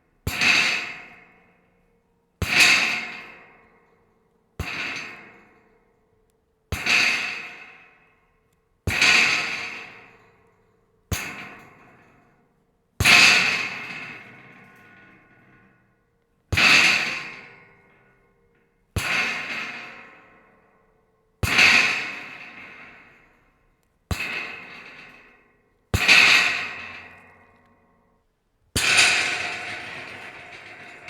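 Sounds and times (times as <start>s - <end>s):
scrap metal clattering: 28.8s - 31.0s.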